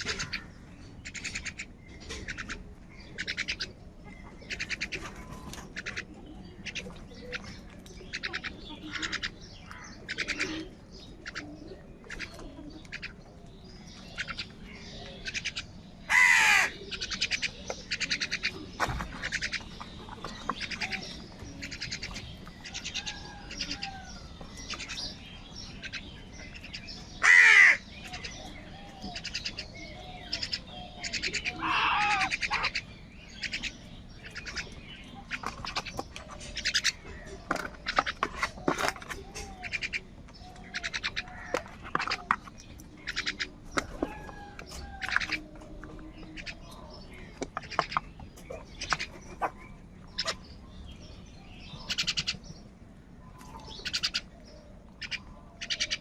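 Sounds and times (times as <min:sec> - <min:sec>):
crows cawing: 0:15.2 - 0:18.6, 0:27.2 - 0:28.3, 0:30.3 - 0:33.8
loud harsh crow calls: 0:16.1 - 0:16.8, 0:27.2 - 0:27.9, 0:31.1 - 0:32.8.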